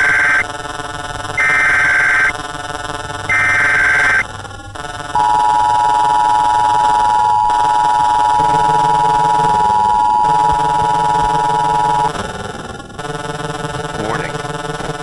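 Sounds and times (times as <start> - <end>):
loud two-tone alarm tone: 0.0 - 0.4, 1.4 - 2.4, 3.3 - 4.3, 5.2 - 12.2
low droning background: 3.0 - 15.0.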